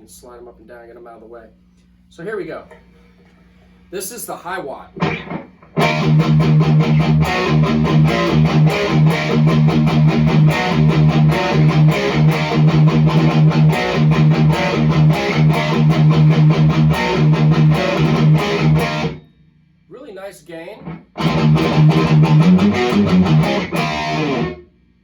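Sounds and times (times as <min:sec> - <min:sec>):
distorted electric guitar riff: 0:05.0 - 0:19.2, 0:20.8 - 0:24.7.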